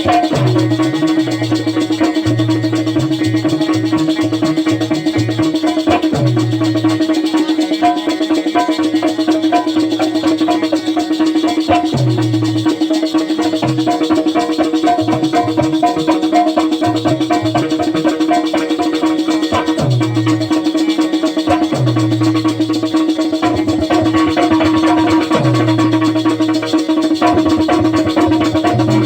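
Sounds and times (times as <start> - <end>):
low bass line: 0.0 - 7.1, 19.6 - 20.6, 21.6 - 29.0
folk drums and rattling percussion: 0.0 - 29.0
steady held tone: 0.0 - 29.0.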